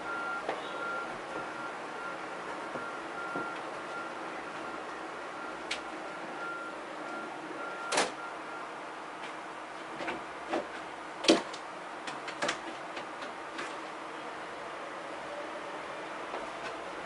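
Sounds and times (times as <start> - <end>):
sharp clicks and knocks: 9.2 - 13.9.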